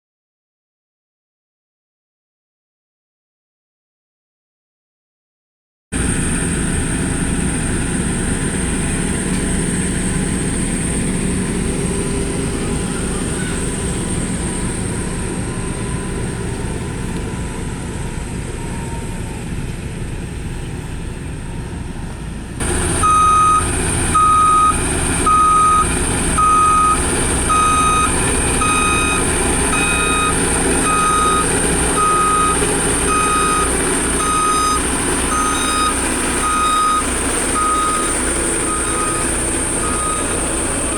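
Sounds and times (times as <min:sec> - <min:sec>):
heavy machine engine running: 0:06.0 - 0:40.9
reversing alarm beeping: 0:22.6 - 0:40.9.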